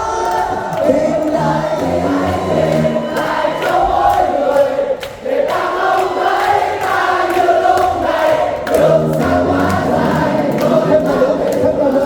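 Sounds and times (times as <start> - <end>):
group singing over music: 0.0 - 12.0
bass notes: 0.8 - 3.6, 8.7 - 12.0.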